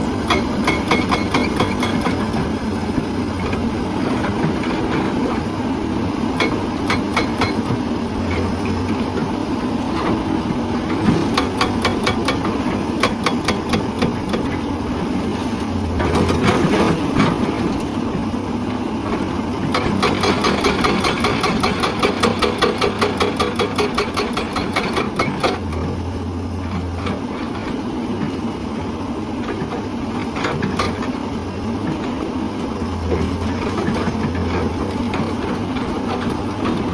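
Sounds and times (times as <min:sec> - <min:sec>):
excavator engine running: 0:00.0 - 0:36.9
hydraulic breaker hammering rock: 0:00.2 - 0:02.5, 0:06.3 - 0:08.5, 0:10.9 - 0:14.5, 0:19.6 - 0:25.8.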